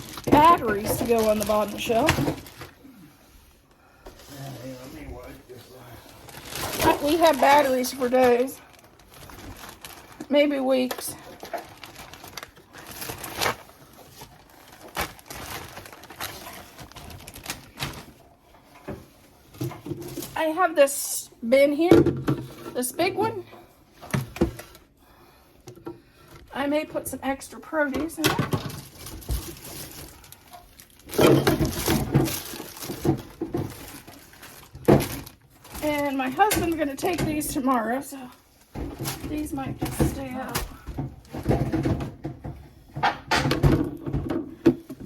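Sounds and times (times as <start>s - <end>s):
plastic containers knocking and rattling: 0.0s - 2.7s, 6.3s - 18.2s, 18.8s - 20.4s, 21.8s - 23.4s, 24.0s - 24.8s, 25.6s - 38.1s, 38.7s - 45.0s
items knocking in refrigerator: 0.1s - 2.6s, 31.0s - 34.1s, 34.8s - 35.4s, 38.8s - 45.0s.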